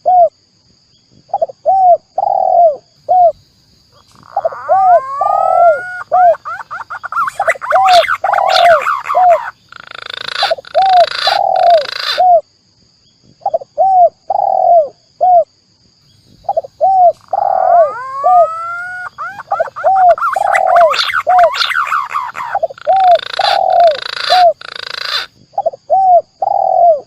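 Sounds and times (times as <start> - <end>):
doves cooing: 4.0 - 12.4, 16.4 - 27.0.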